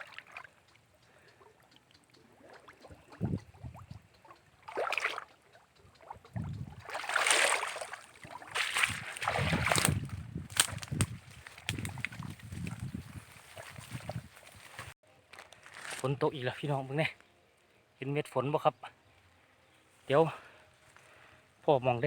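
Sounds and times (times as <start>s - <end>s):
water sloshing and splashing: 0.0s - 0.8s, 1.5s - 15.0s.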